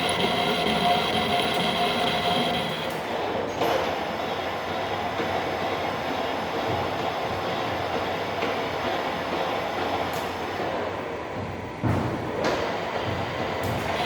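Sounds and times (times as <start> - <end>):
metal lathe running: 0.0 - 3.2.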